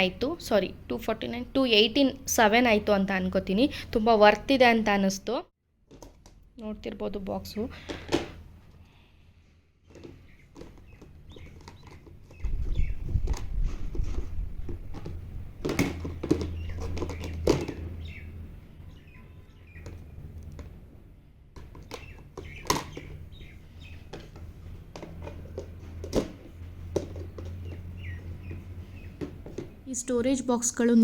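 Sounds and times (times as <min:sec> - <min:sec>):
birds chirping faintly: 0:09.5 - 0:13.4, 0:16.3 - 0:20.2, 0:21.6 - 0:24.7, 0:26.7 - 0:31.0
plastic containers knocking: 0:09.9 - 0:18.0, 0:21.5 - 0:23.5, 0:24.1 - 0:29.8.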